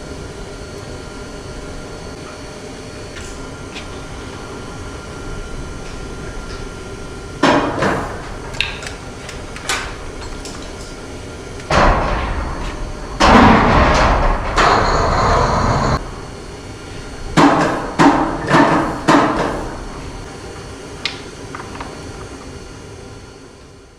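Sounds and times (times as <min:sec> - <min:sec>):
metal knocks and clanks: 0:11.7 - 0:16.0.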